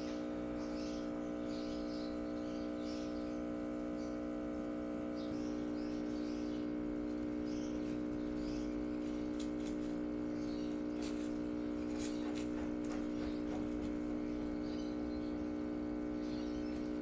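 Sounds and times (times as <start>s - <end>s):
steady multi-tone hum: 0.0s - 17.0s.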